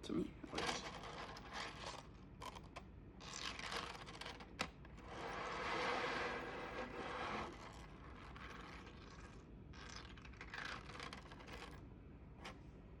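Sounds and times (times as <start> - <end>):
plastic segments scraping and rattling: 0.5 - 2.6, 5.2 - 11.8.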